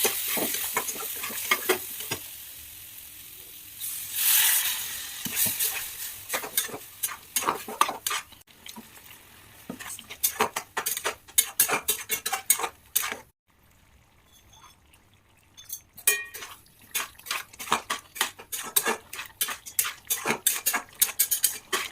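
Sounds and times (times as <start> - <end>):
utensil clinking and scraping pan: 0.0 - 2.2, 5.2 - 8.4, 9.7 - 13.3, 15.6 - 21.9.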